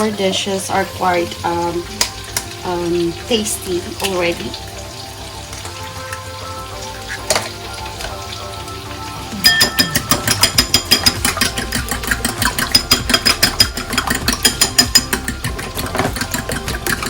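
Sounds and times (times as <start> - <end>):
whisk clicking against bowl: 9.4 - 17.0.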